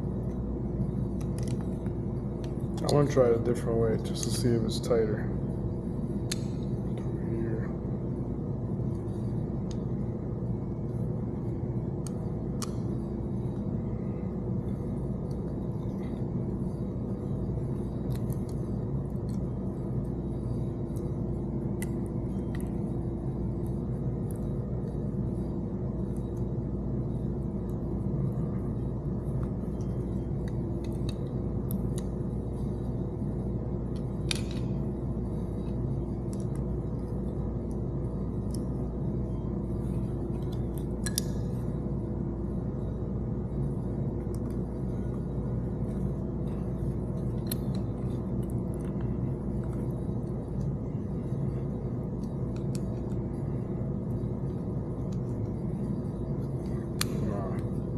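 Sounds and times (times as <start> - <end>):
steady low hum: 0.0 - 57.9
small clicks and taps of parts: 1.1 - 3.2, 33.9 - 34.8, 40.3 - 41.6, 47.2 - 49.9.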